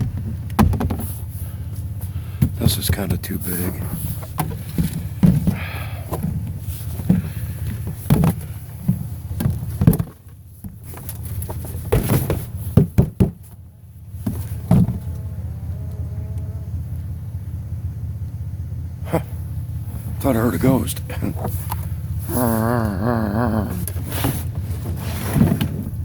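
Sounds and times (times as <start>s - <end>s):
plastic totes knocking and thumping: 0.0s - 15.2s, 20.1s - 22.2s, 23.8s - 26.0s
steady low hum: 0.0s - 26.0s.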